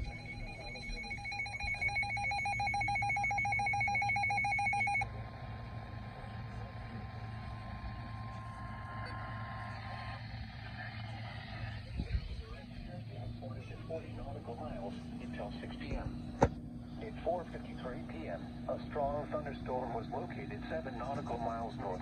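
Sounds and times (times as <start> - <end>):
faint steady tone: 0.0 - 5.3
radio hiss: 5.1 - 22.0.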